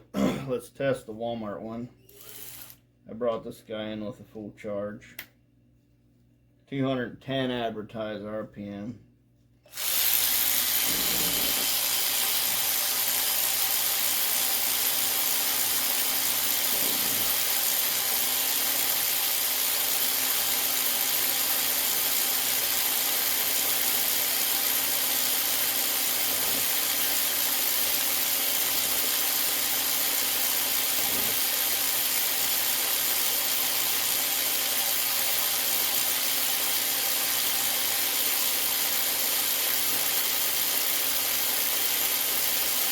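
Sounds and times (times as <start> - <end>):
electric ratchet motor whirring: 2.0 - 2.8, 9.7 - 42.9.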